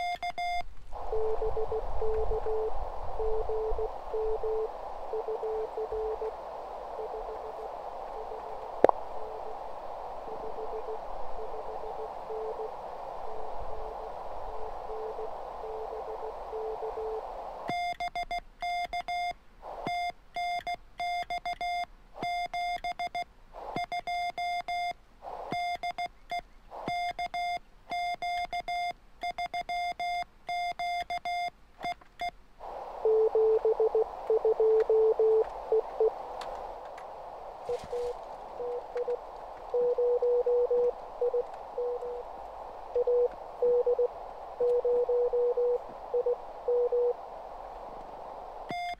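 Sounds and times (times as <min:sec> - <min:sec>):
morse code signal: 0:00.0 - 0:06.3, 0:07.0 - 0:07.6, 0:10.3 - 0:12.8, 0:14.5 - 0:23.2, 0:23.8 - 0:32.0, 0:33.0 - 0:36.2, 0:37.7 - 0:42.3, 0:42.9 - 0:47.2
high morse sidetone: 0:00.0 - 0:08.5, 0:10.2 - 0:18.0, 0:33.0 - 0:36.2, 0:37.7 - 0:47.2
receiver hiss: 0:00.0 - 0:48.9.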